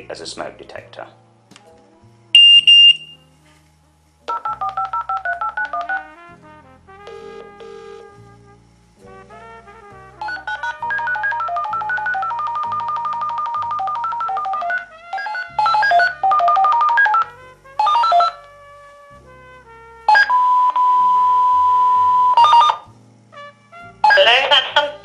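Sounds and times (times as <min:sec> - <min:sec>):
stepped electronic beep tones: 0:02.4 - 0:03.2.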